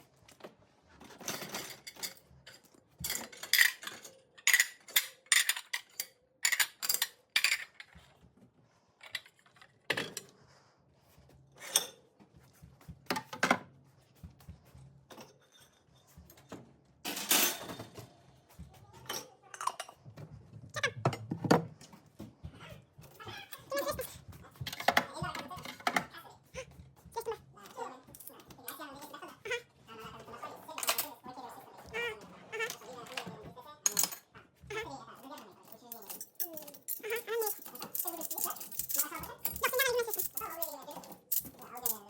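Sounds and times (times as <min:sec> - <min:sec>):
dishes and cutlery clinking: 0:01.0 - 0:08.1, 0:11.6 - 0:13.6, 0:15.1 - 0:22.0, 0:23.0 - 0:42.0
dishes rattling: 0:01.0 - 0:08.1, 0:17.1 - 0:18.1, 0:30.0 - 0:34.3, 0:35.6 - 0:42.0.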